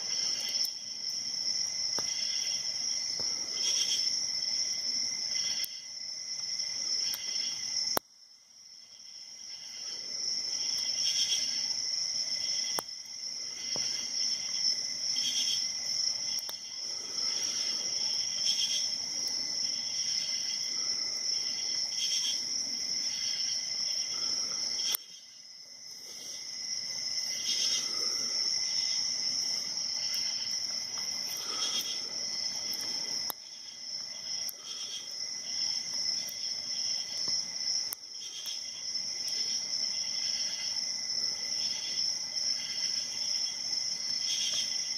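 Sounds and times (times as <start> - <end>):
insects chirring: 0.0 - 44.9.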